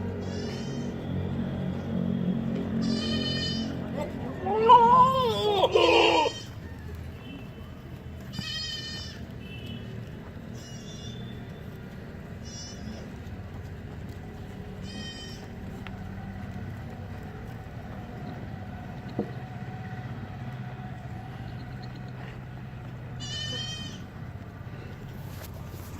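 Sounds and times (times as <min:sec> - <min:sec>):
goat bleating: 0:00.2 - 0:01.0, 0:02.8 - 0:06.7, 0:08.3 - 0:09.3, 0:10.6 - 0:11.2, 0:12.3 - 0:13.2, 0:14.8 - 0:15.9, 0:23.1 - 0:24.3.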